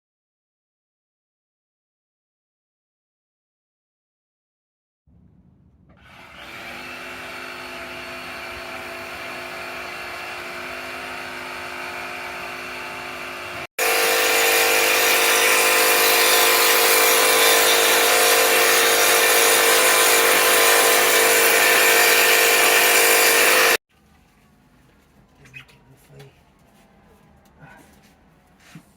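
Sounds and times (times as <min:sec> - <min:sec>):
power tool running: 0:05.9 - 0:23.8.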